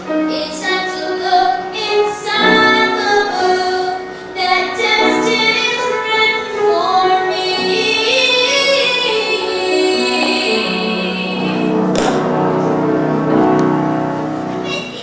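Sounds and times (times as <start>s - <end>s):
instrumental accompaniment: 0.0s - 15.0s
child singing: 0.1s - 11.6s.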